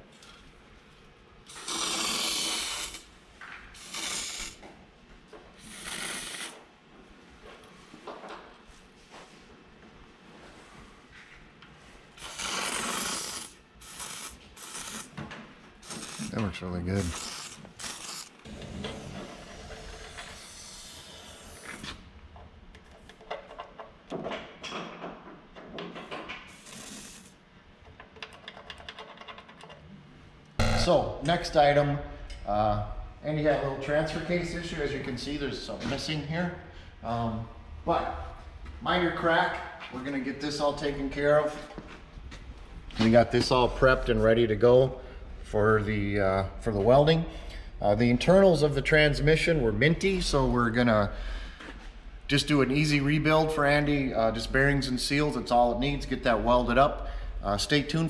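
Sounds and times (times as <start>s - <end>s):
aerosol can spraying: 3.8s - 4.6s, 12.2s - 15.2s, 15.8s - 16.3s.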